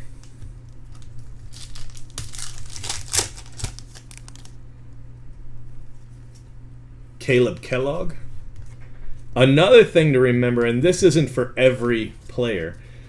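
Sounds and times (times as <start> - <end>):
steady low hum: 0.0 - 13.0
wrapper tearing and crinkling: 0.9 - 4.6.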